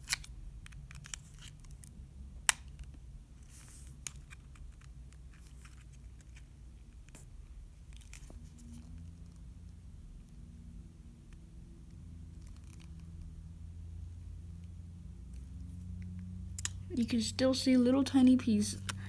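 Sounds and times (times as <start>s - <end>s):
smartphone parts clicking and scraping: 0.0s - 7.3s.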